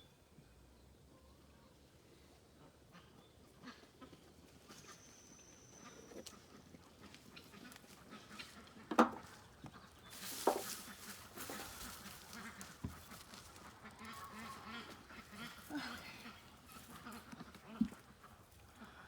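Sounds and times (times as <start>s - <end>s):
sharp knocks: 8.9s - 9.2s
hands digging through soil: 10.1s - 16.0s
faint animal calls: 13.9s - 17.9s.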